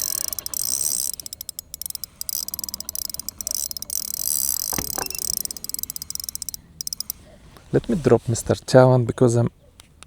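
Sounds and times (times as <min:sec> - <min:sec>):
insects pulsing trill: 0:00.0 - 0:07.1.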